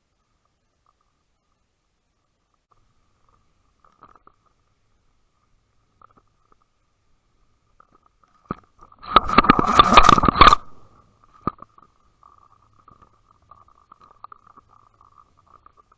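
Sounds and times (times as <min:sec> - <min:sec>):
faint steady whine: 0:00.0 - 0:15.9
knocking and rushing noise: 0:09.0 - 0:10.8.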